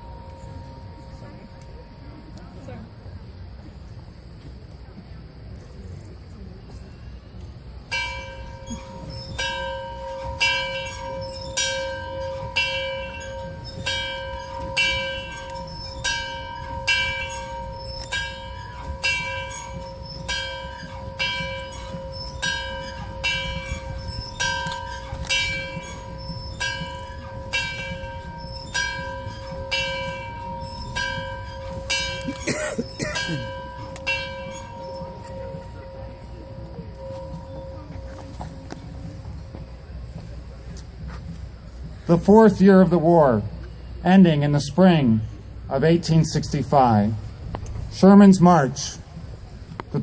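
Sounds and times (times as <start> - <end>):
large bell tolling: 0.0 - 3.2, 7.9 - 40.0.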